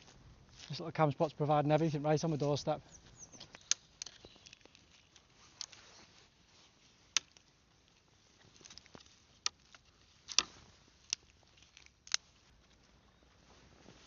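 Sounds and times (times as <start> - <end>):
twigs snapping: 3.3 - 5.8, 7.0 - 12.8.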